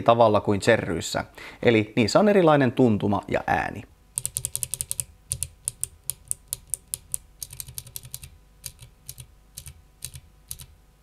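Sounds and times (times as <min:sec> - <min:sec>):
mechanical keyboard typing: 0:04.2 - 0:10.8.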